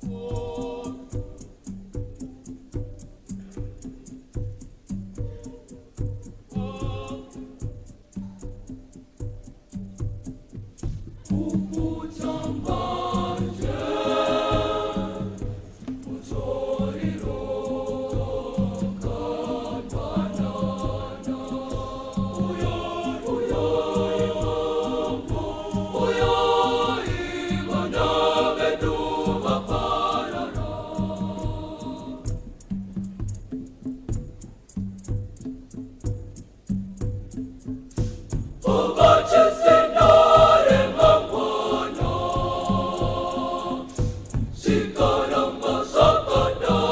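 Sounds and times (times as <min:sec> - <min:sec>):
girls' choir singing in harmony: 0:00.0 - 0:04.1, 0:05.6 - 0:08.0, 0:11.2 - 0:32.8, 0:38.6 - 0:46.9
steady percussive beat: 0:00.0 - 0:46.9.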